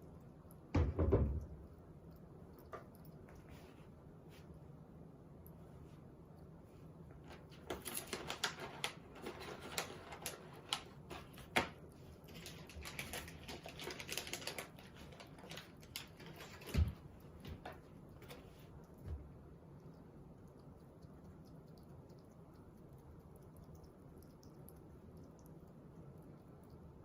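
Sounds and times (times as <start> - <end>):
hedgehog crunching food: 7.4 - 27.0.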